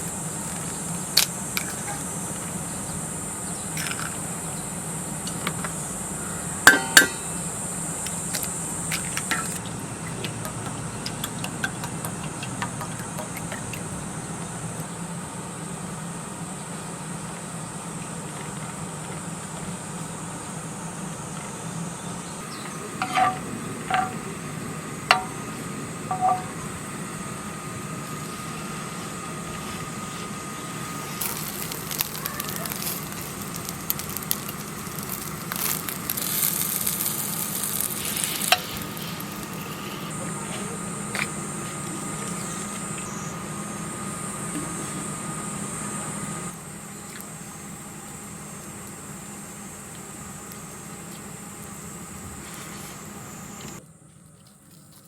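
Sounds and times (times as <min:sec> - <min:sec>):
steady machine hum: 0:00.0 - 0:54.1
food sizzling in a pan: 0:30.8 - 0:40.1.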